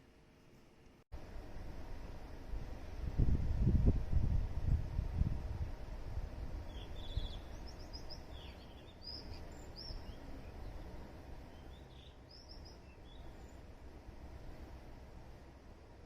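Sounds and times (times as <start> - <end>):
small birds chirping: 6.3 - 13.9.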